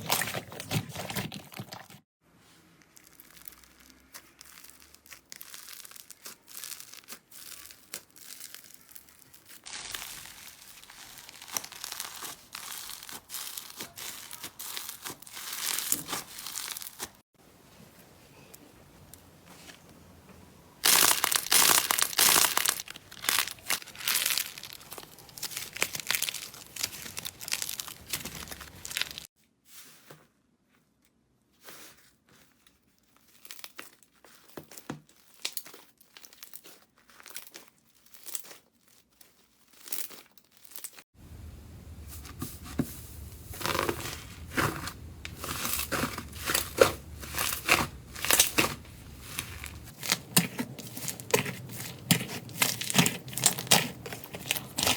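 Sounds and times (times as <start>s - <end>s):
slime crackling by hand: 2.8s - 17.2s, 20.8s - 29.3s, 42.3s - 54.9s.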